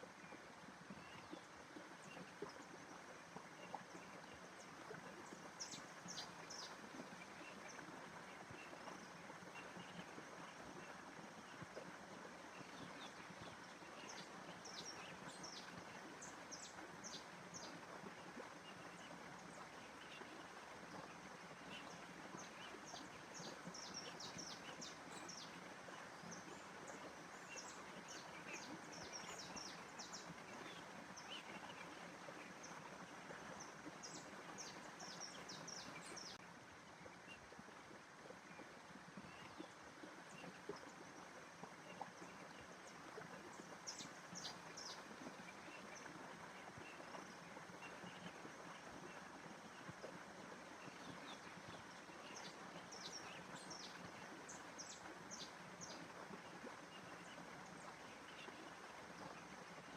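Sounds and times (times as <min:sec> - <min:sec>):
small birds chirping: 0:20.0 - 0:36.4.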